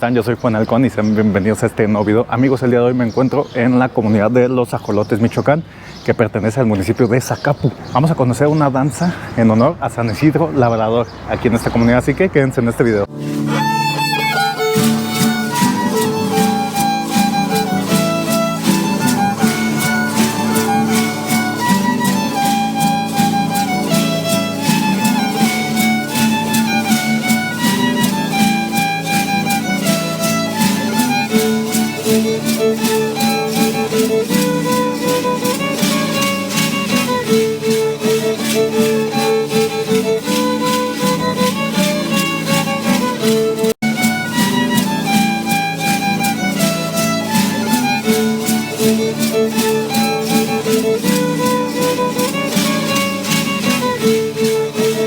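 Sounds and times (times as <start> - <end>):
guitar accompaniment: 11.8 - 55.0
violin playing lively melody: 13.0 - 55.0.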